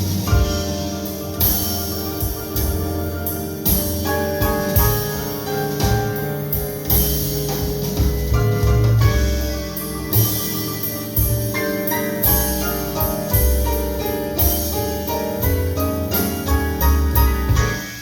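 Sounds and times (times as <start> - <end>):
drums with cymbals: 0.0 - 18.0
jazz piano: 0.0 - 18.0
upright bass: 0.0 - 18.0.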